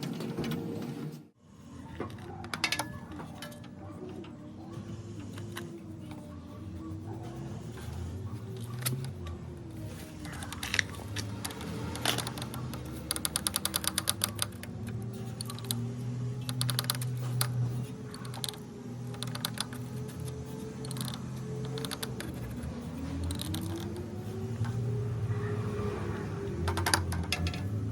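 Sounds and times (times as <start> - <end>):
clicks: 10.1 - 24.9.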